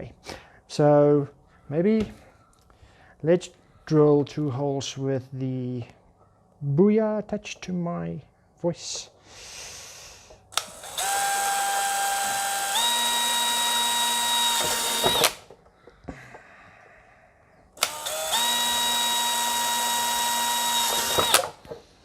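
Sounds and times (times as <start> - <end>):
power drill motor whine: 10.5 - 15.4, 17.8 - 21.6.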